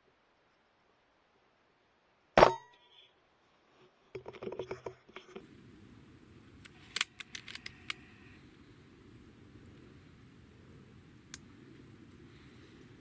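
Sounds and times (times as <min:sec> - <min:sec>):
light clicks: 0:05.4 - 0:13.0.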